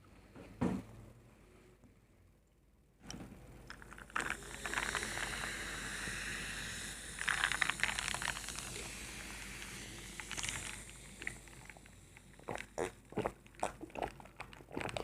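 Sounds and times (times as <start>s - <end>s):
steady hiss: 4.1s - 13.0s.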